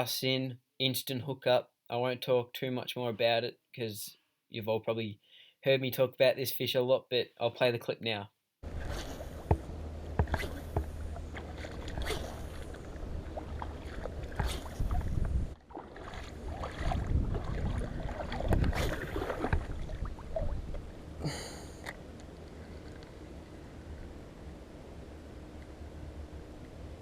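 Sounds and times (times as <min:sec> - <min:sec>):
wind rumble on microphone: 0:08.6 - 0:21.3.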